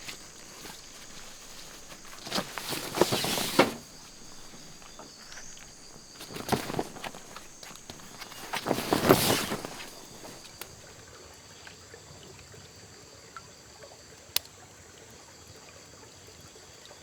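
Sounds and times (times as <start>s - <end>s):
footsteps on dry leaves: 0.0s - 10.8s.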